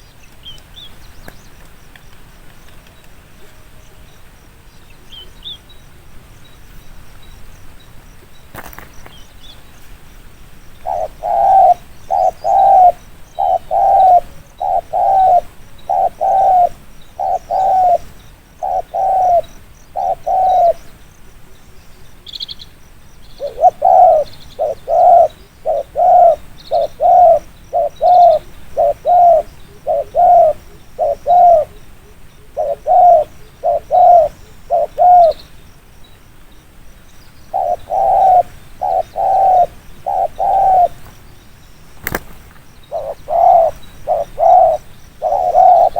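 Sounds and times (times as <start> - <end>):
small bird chirping: 10.7 - 45.9
dove cooing: 10.8 - 20.9, 23.3 - 35.4, 37.5 - 41.2, 42.0 - 45.9.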